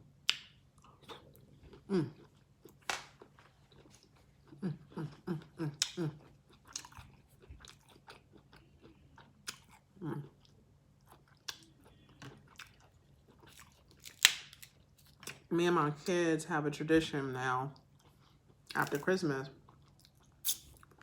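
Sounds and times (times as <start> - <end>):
wet chewing and smacking: 0.2 - 15.4.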